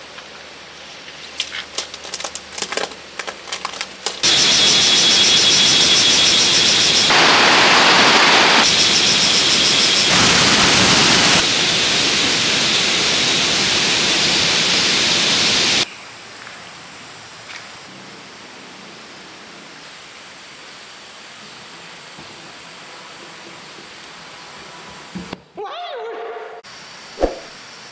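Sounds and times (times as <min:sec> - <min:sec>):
forest stream rushing: 0:01.9 - 0:15.9
high pulsing insect trill: 0:04.2 - 0:15.8.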